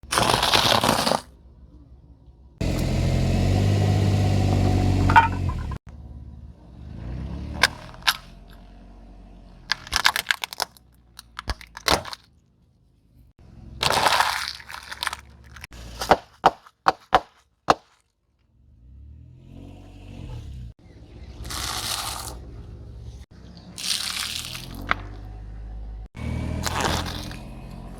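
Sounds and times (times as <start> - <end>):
tyres crushing crunchy objects: 0.0 - 1.3, 9.7 - 12.3, 13.8 - 18.1, 21.4 - 22.4, 23.7 - 25.3, 26.5 - 27.9
sharp cracks and snaps: 9.7 - 12.3, 23.8 - 25.2.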